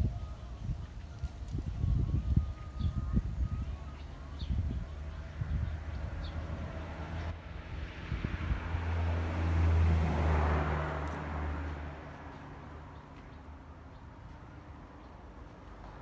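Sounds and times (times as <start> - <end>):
vehicle engine passing by: 4.0 - 13.6.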